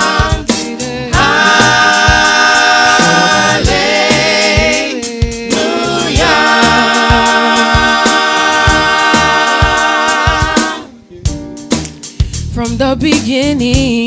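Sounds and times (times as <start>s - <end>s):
gospel choir singing chords: 0.0s - 11.0s
steady drumbeat: 0.0s - 14.0s.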